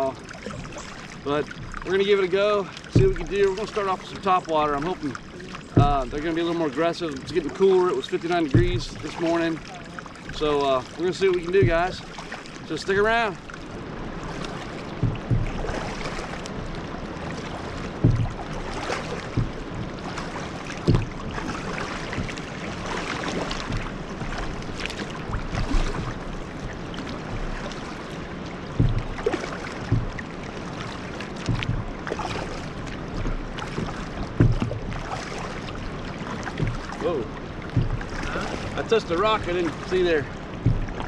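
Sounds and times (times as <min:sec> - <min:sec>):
river water moving around kayak: 0:00.0 - 0:41.0
dull knocks: 0:02.8 - 0:06.6, 0:08.3 - 0:09.4, 0:11.2 - 0:12.1, 0:14.3 - 0:16.8, 0:17.8 - 0:41.0.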